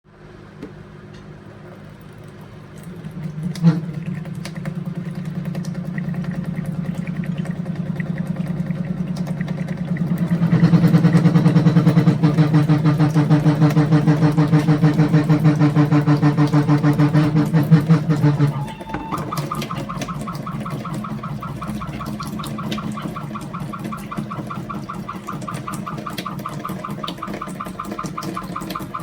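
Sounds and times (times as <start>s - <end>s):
water pipes pulsing drone: 0.6s - 29.0s.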